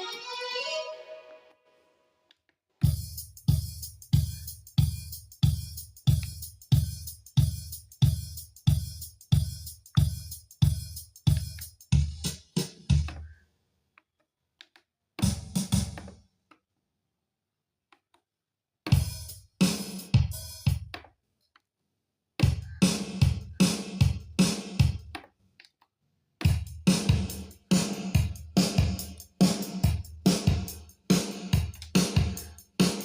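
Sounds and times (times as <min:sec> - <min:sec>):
keyboard drum beat: 0:02.8 - 0:13.3, 0:15.2 - 0:16.1, 0:18.9 - 0:21.0, 0:22.4 - 0:25.2, 0:26.4 - 0:33.0.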